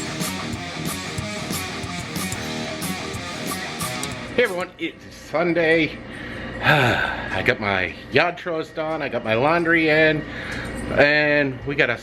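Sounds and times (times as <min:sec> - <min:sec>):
steady drum beat: 0:00.0 - 0:04.7
guitar-driven music: 0:00.0 - 0:04.8.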